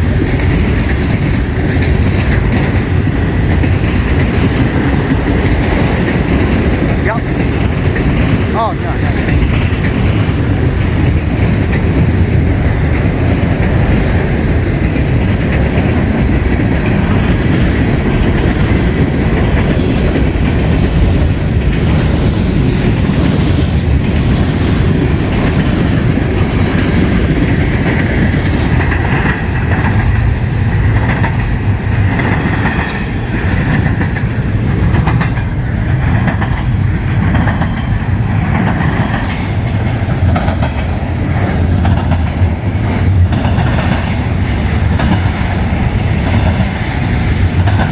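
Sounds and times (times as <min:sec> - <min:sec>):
train cars rumbling: 0:00.0 - 0:47.9
wheels clacking over rail joints: 0:00.0 - 0:47.9.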